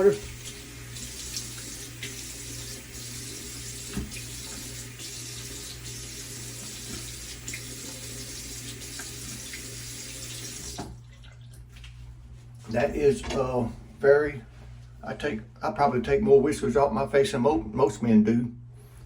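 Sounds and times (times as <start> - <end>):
tap running into sink: 3.8 - 11.0.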